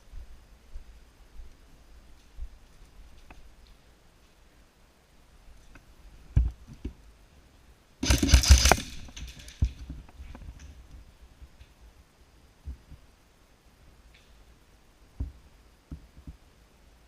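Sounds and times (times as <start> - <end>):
airsoft gun rapid shots: 8.0 - 9.6.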